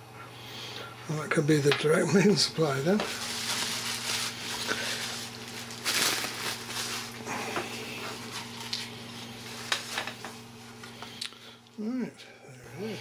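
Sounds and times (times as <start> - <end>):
steady low hum: 0.0 - 13.0
packaging rustling: 2.7 - 10.4.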